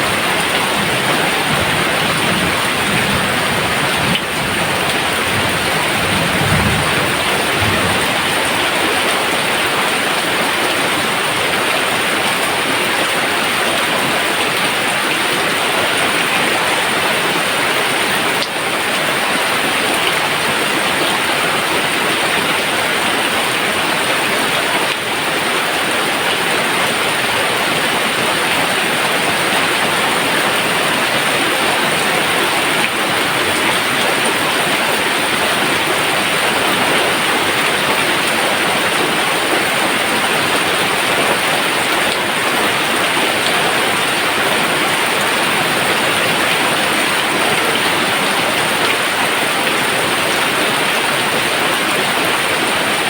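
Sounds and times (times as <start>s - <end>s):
distant thunder rumble: 0.0s - 9.0s
heavy rain: 0.0s - 53.0s.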